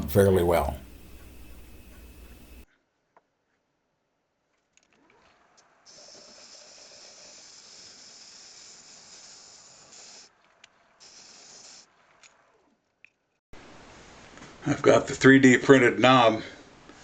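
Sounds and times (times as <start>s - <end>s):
pressurised jet hissing: 5.9s - 10.3s.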